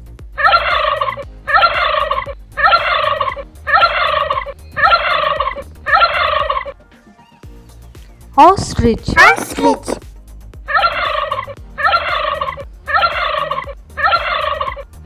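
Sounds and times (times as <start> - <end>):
turkey gobbling: 0.4 - 6.8, 10.7 - 14.9.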